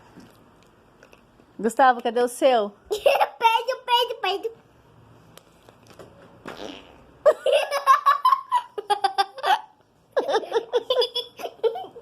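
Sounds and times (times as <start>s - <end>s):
people giggling and laughing: 7.3s - 12.0s.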